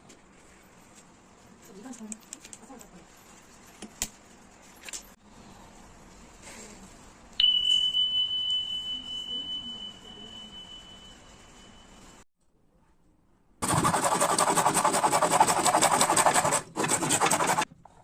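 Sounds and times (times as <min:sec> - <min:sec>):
high pure ringing tone: 0:07.4 - 0:12.3.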